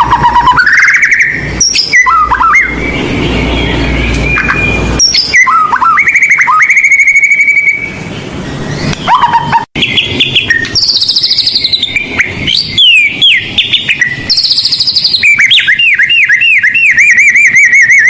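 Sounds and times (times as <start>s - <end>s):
bird singing whistled phrases: 0.0s - 8.0s, 8.6s - 18.0s.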